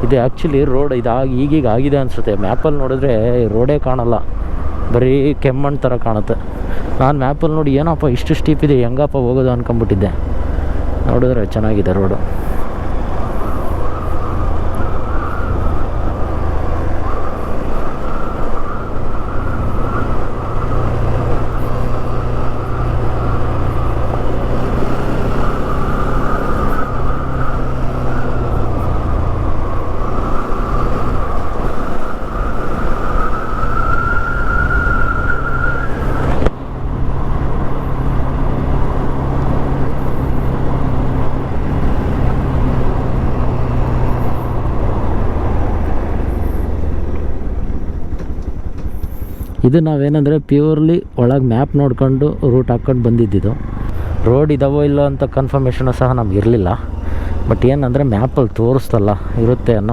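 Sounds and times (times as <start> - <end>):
motorcycle running on road: 0.0 - 59.9
wind on microphone: 12.2 - 49.6.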